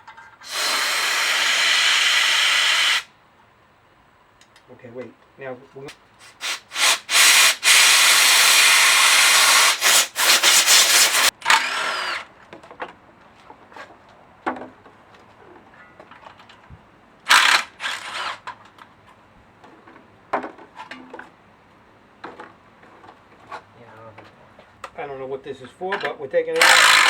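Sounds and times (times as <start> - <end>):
compressed air blow gun hissing: 0.4 - 3.1, 6.2 - 11.3.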